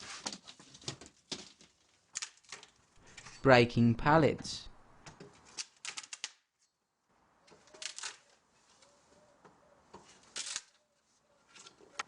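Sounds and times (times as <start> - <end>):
wooden pallet cracking and creaking: 0.0 - 3.4, 5.0 - 6.4, 7.5 - 8.4, 9.9 - 10.8.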